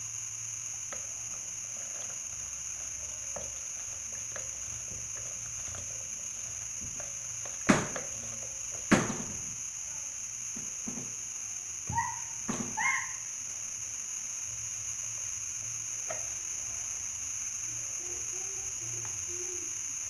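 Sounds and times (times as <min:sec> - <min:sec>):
steady background hiss: 0:00.0 - 0:20.0
utensils and dishes clicking: 0:00.8 - 0:09.5
sharp knocks: 0:06.8 - 0:09.6, 0:11.9 - 0:12.9.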